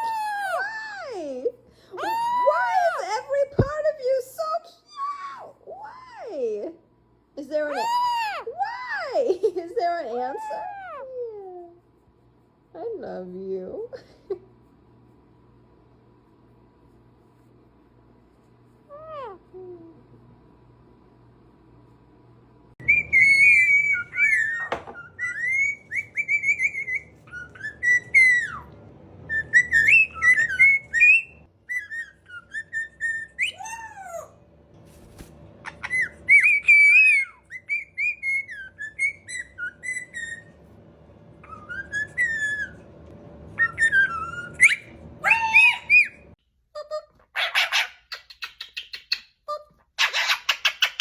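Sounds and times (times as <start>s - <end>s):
parrot whistling: 22.8s - 34.3s, 35.6s - 40.6s, 41.4s - 46.4s.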